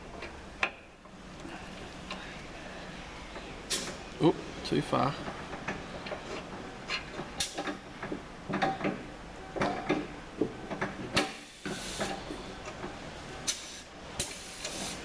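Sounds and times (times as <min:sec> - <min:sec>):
light metal clicks and knocks: 0:05.1 - 0:11.3
compressed air hissing: 0:11.3 - 0:12.2, 0:13.5 - 0:15.0.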